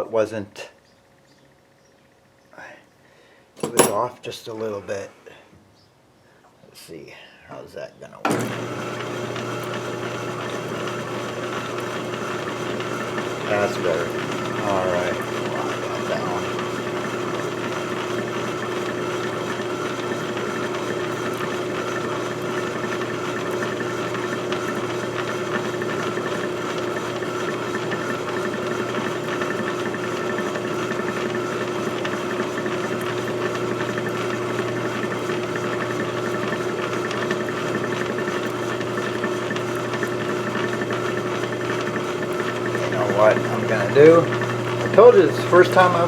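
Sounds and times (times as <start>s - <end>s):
steady mechanical hum: 6.9s - 46.0s.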